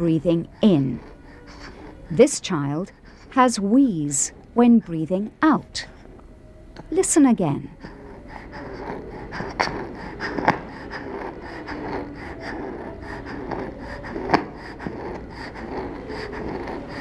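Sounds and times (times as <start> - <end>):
child wheezing breath: 0.0 - 2.2, 7.7 - 17.0.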